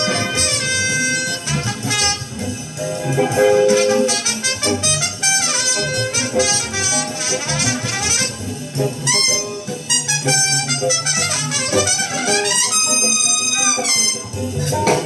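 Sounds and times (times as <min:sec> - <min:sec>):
small-group jazz with horns: 0:00.0 - 0:15.0
walking bass line: 0:00.0 - 0:15.0.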